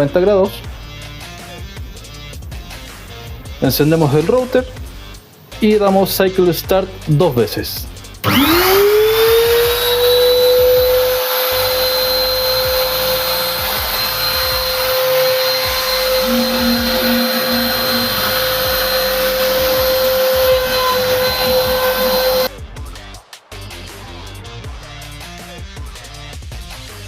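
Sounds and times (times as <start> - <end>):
router spindle high-pitched whine: 8.2 - 22.5.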